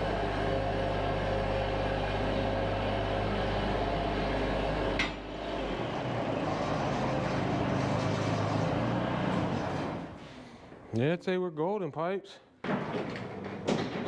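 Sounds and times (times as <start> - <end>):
loader engine running: 0.0 - 10.9.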